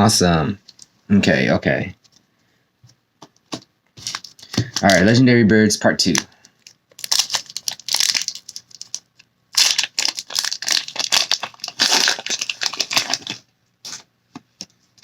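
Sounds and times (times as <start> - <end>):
foil wrapper crinkling and tearing: 4.0 - 5.1, 6.1 - 14.0.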